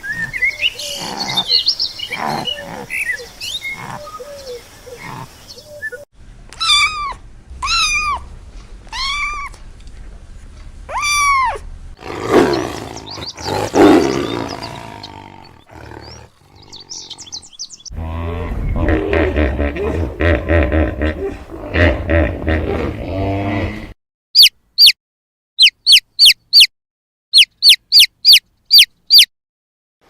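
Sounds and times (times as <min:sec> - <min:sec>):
animal calls rising and falling: 0:06.6 - 0:08.2, 0:10.9 - 0:23.7
rough low animal call: 0:10.9 - 0:24.0.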